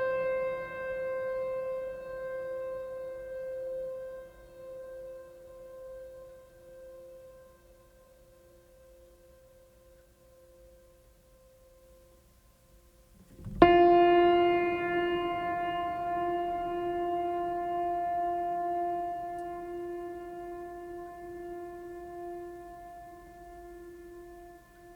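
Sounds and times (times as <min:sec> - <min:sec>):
ambient music held tones: 0:13.2 - 0:24.9
loud sustained note: 0:13.5 - 0:24.9.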